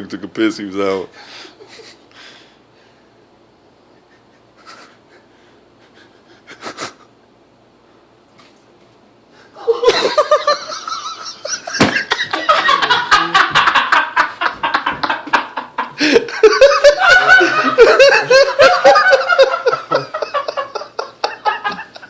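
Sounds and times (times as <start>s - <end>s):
young men laughing: 1.3s - 2.1s, 3.9s - 7.2s, 9.6s - 22.0s.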